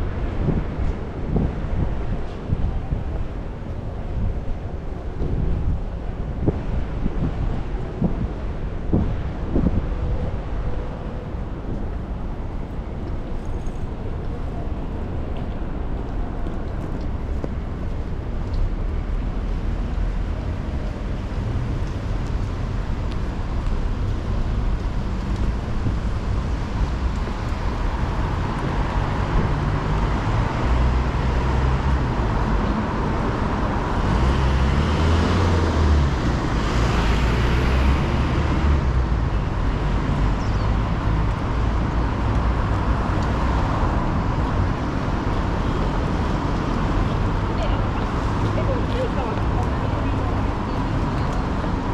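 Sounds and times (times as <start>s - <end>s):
traffic engine rumble: 0.0s - 51.9s
vehicle passing: 33.8s - 41.0s.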